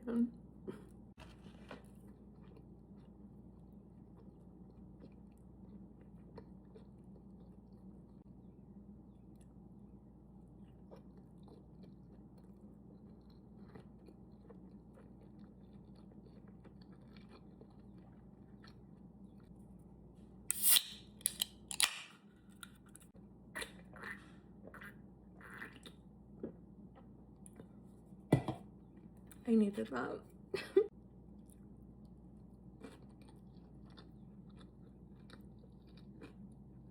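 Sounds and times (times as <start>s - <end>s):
person chewing: 0.7s - 7.9s, 10.5s - 19.6s, 31.4s - 36.9s.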